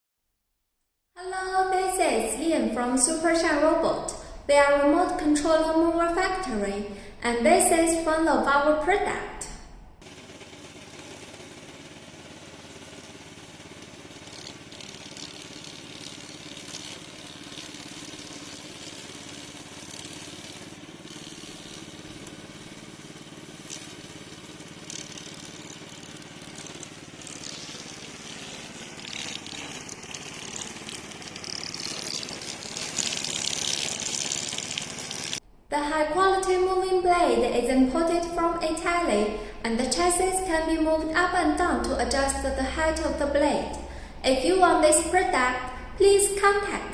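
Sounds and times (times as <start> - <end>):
lawn mower running: 10.0 - 35.4.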